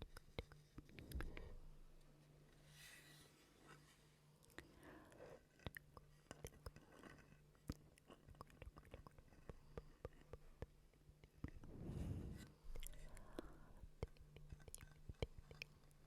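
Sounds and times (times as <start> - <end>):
wet mouth clicks and smacks: 7.7 - 11.6.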